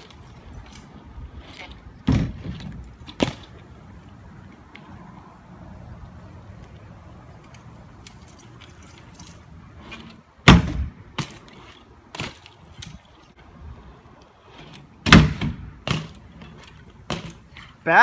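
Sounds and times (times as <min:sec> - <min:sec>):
bike knocking and clattering: 0:00.0 - 0:03.6, 0:07.4 - 0:13.4, 0:14.5 - 0:18.0.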